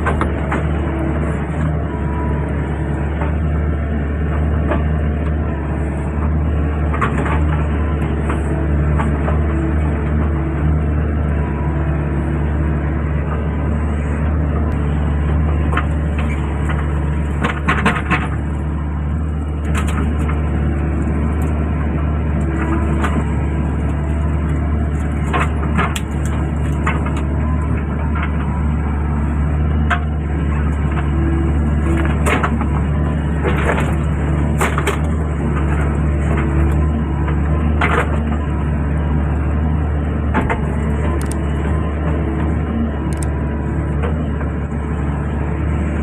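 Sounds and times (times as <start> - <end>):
excavator diesel engine running: 0.0 - 46.0
sharp cracks and knocks: 33.4 - 36.8.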